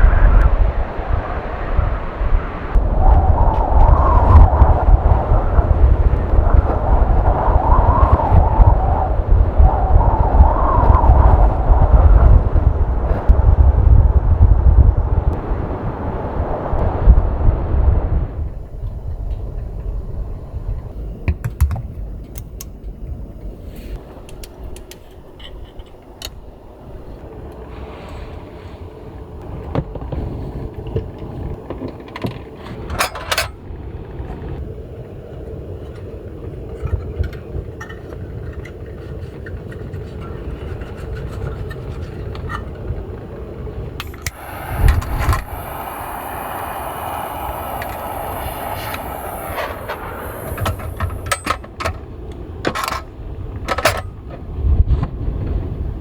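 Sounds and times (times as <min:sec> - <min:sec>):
gusting wind rumble: 0:00.0 - 0:56.0.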